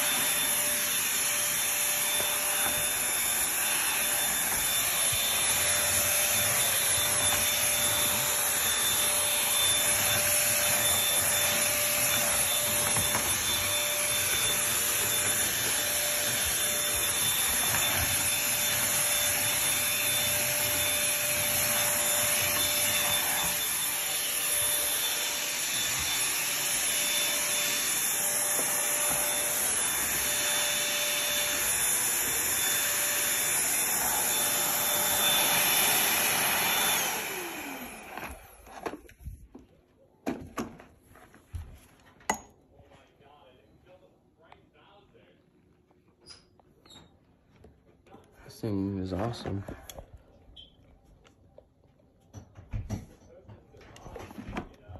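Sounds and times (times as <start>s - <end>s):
stick vacuum running: 0.0s - 39.3s.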